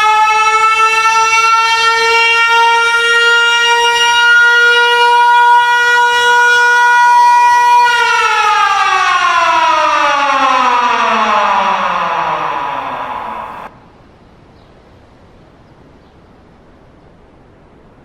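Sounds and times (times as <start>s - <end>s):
air-raid siren wailing: 0.0s - 13.7s.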